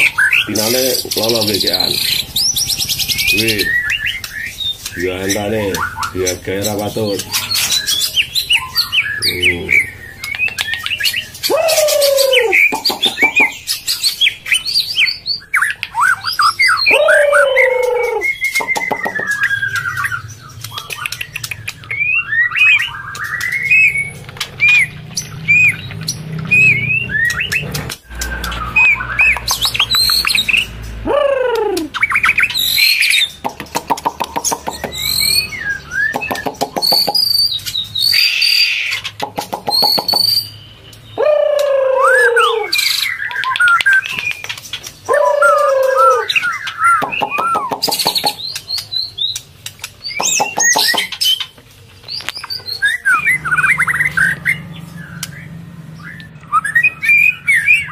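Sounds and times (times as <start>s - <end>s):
bird chirping: 0.0s - 57.9s
bird clicks: 10.2s - 11.1s, 20.6s - 22.0s, 33.4s - 35.1s, 47.0s - 51.2s.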